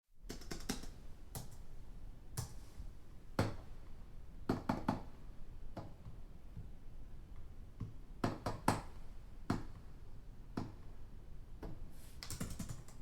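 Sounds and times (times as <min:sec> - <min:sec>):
distant keyboard typing: 0:00.3 - 0:01.6, 0:12.2 - 0:13.0.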